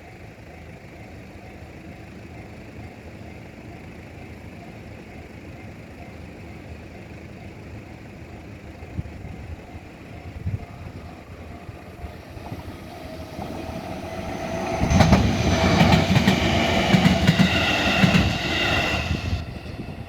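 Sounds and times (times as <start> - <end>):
train passing: 1.4 - 20.0
wheels clacking over rail joints: 9.2 - 20.0.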